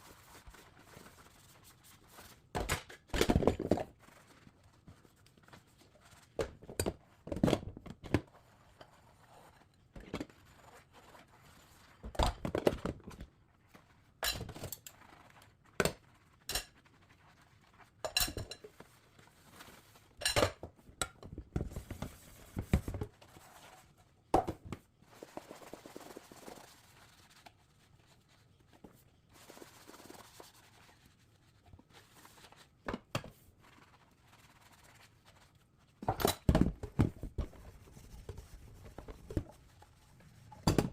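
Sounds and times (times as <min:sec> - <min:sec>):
sponge scrubbing dishes: 0:00.0 - 0:02.5, 0:24.9 - 0:40.7.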